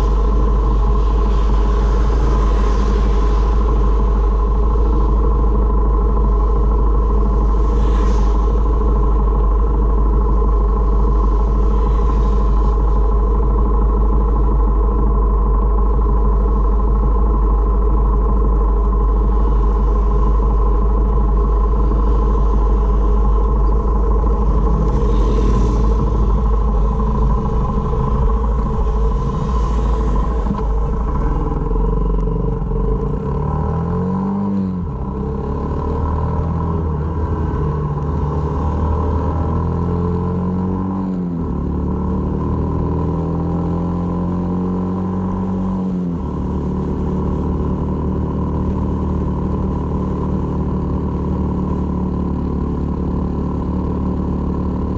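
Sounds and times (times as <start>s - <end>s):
wind rumble on microphone: 0.0s - 51.7s
motorcycle engine revving: 20.8s - 54.9s.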